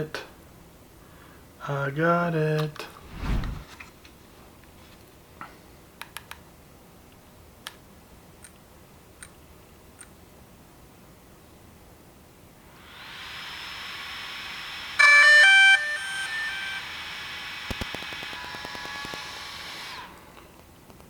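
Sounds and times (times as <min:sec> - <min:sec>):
quick clicks: 0:17.7 - 0:19.4.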